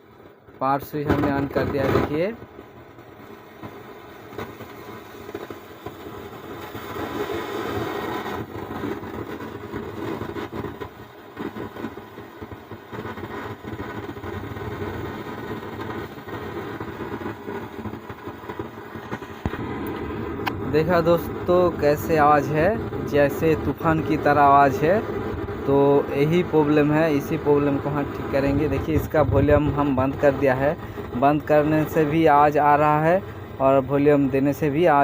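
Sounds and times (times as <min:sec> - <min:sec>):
amplifier rushing noise: 0:06.4 - 0:35.0.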